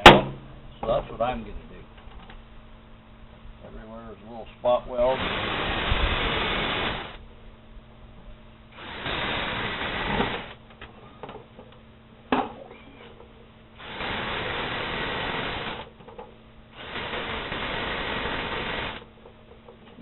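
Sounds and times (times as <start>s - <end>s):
battery drill boring into steel: 5.2s - 7.2s, 8.8s - 10.6s, 13.8s - 15.8s, 16.8s - 19.0s.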